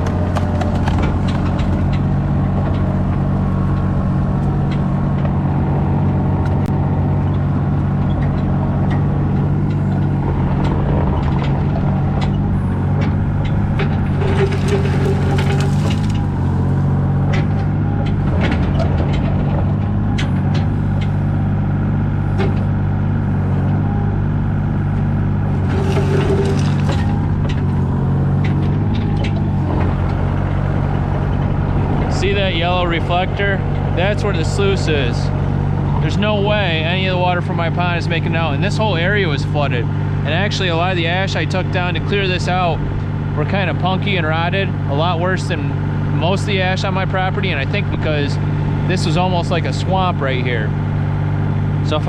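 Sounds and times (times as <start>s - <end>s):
machine clanks and knocks: 0.0s - 5.4s, 7.9s - 21.2s, 25.5s - 27.8s
excavator diesel engine running: 0.0s - 52.0s
high whine: 0.0s - 52.0s.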